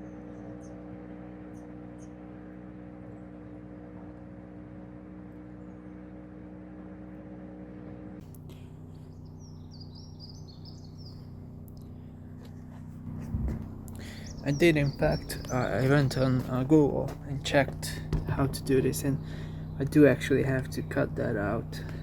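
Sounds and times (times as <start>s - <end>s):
low hum of held tones: 0.0s - 22.0s
small birds chirping: 8.3s - 22.0s.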